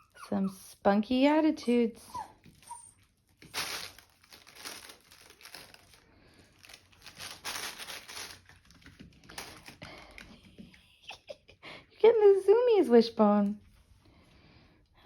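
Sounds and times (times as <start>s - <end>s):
crinkly material rustling: 2.4s - 10.3s.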